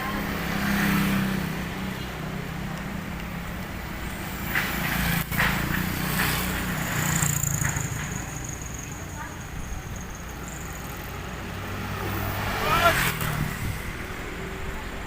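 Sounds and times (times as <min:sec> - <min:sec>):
street noise: 0:00.0 - 0:15.0.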